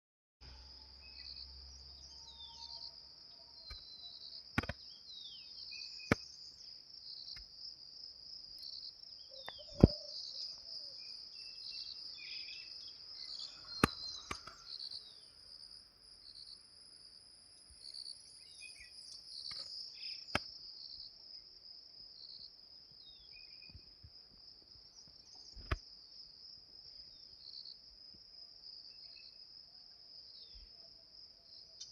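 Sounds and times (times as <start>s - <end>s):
insects chirring: 0.5s - 28.0s
bird chirps: 0.7s - 7.4s, 8.6s - 16.6s, 17.8s - 20.4s
sharp clicks: 4.6s - 4.8s, 13.7s - 14.9s.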